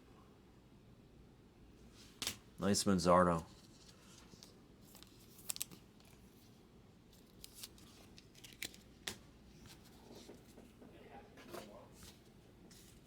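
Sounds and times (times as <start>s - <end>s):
cards being flipped by hand: 3.6s - 6.4s, 7.2s - 10.4s.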